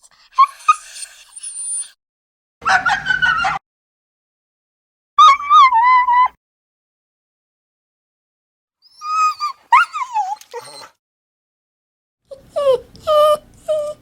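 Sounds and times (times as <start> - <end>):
dog whimpering and yelping: 0.2 - 2.0, 8.8 - 11.0, 12.3 - 14.0.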